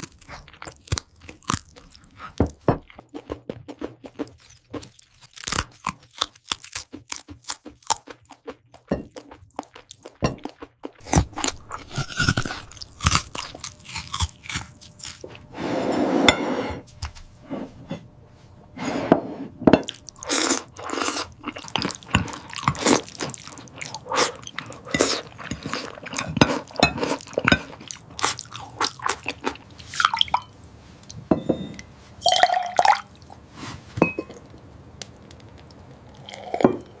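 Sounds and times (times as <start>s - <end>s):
dog chewing and crunching food: 0.0s - 15.5s, 19.8s - 30.3s.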